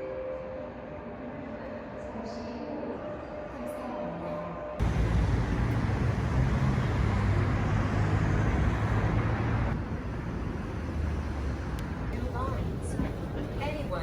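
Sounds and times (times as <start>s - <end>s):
vehicle road noise: 4.8s - 14.0s.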